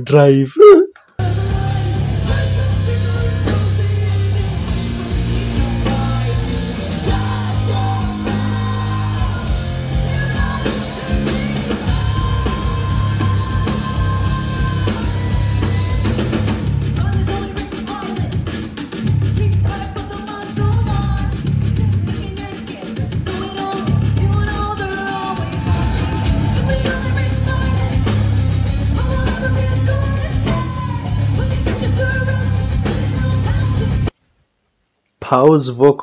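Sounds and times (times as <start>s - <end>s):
bass guitar: 0.0s - 17.4s, 20.6s - 22.2s, 23.9s - 24.6s, 25.6s - 34.1s
person singing: 0.5s - 16.2s, 19.5s - 34.1s
distorted electric guitars: 1.2s - 16.9s, 25.4s - 34.1s
drum kit: 1.2s - 34.1s.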